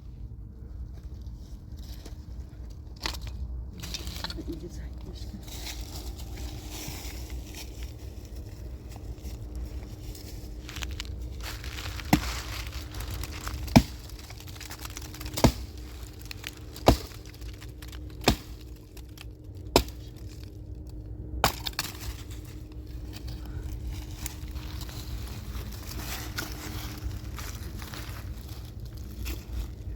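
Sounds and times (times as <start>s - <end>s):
axe chopping firewood: 13.7s - 14.0s, 15.2s - 15.8s, 16.8s - 17.2s, 18.2s - 18.6s, 19.7s - 20.2s, 21.4s - 22.0s.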